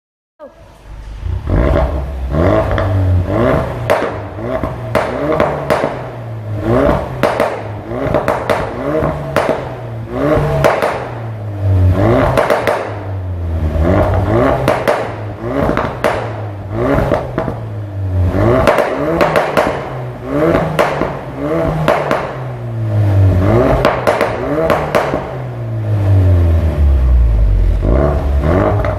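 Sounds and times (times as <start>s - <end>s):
car engine revving: 0.5s - 28.9s
exhaust pops and crackles: 2.6s - 11.3s, 12.0s - 13.2s, 13.9s - 17.8s, 18.4s - 22.5s, 23.4s - 25.5s.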